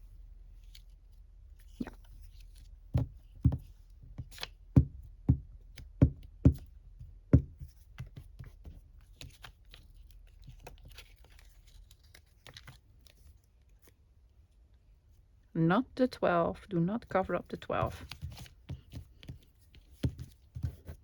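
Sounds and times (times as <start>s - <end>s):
paper rustling: 7.6s - 14.0s, 17.7s - 21.0s.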